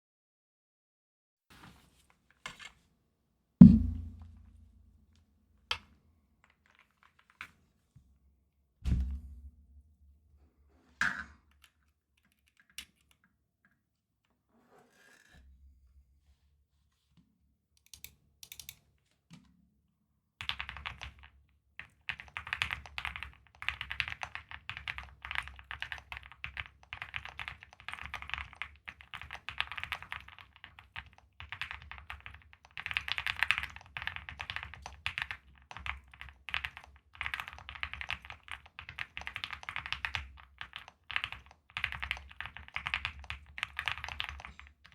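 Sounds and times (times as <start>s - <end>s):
typing on mechanical keyboard: 20.4s - 44.9s.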